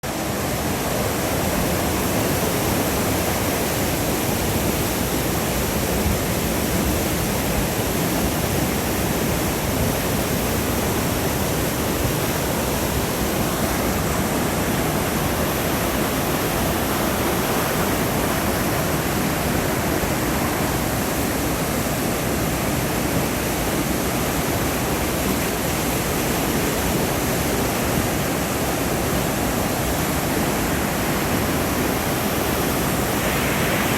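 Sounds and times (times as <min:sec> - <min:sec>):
river water rushing: 0:00.0 - 0:33.9.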